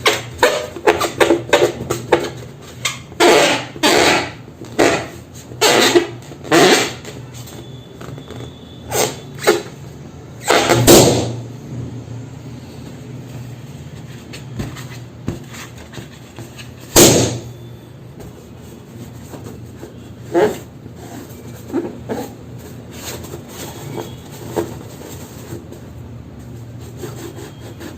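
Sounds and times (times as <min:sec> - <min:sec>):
balloons bursting: 0:03.2 - 0:09.6, 0:10.4 - 0:11.4, 0:16.8 - 0:17.6.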